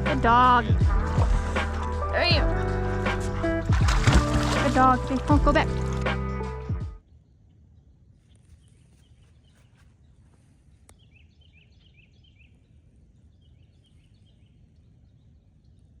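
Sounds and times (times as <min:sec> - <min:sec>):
low steady rumble: 0:00.0 - 0:06.8.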